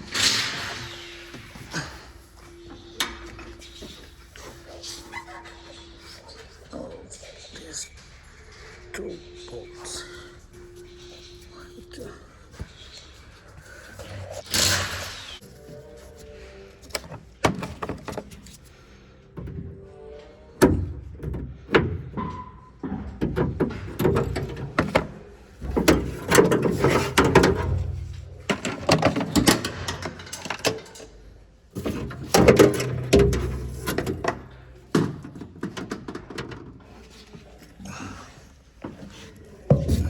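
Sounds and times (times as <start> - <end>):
metal door latch clanking: 31.8 - 36.6.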